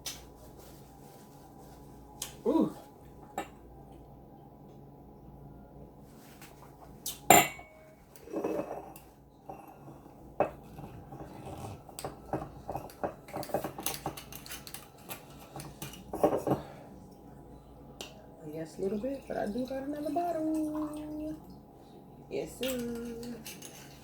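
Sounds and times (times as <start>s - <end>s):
cutlery and dishes clattering: 7.3s - 9.8s, 10.4s - 16.8s, 22.6s - 24.0s.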